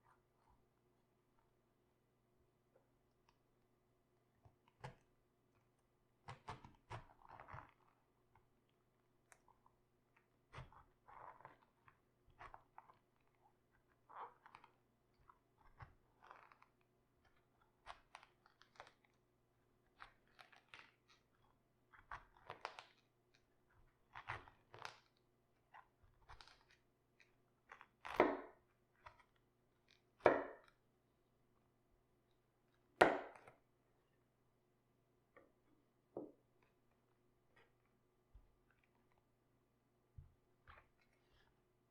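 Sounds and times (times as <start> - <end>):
cabbage crunching: 19.9 - 28.3.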